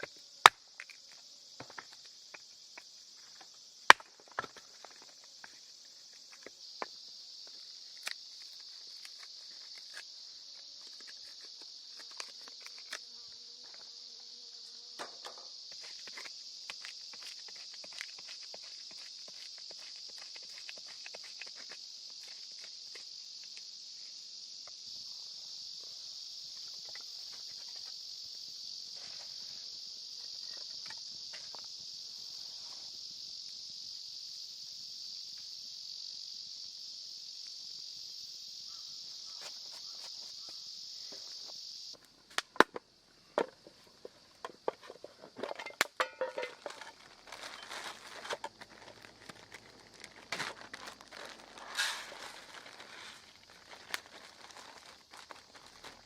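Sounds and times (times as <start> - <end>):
high-pitched insect chorus: 0.0 - 56.0
light rustles and steps: 43.4 - 56.0.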